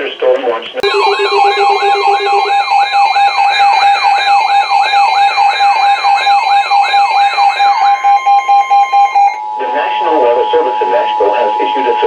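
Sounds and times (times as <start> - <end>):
weather radio alarm tone: 0.8 - 9.4.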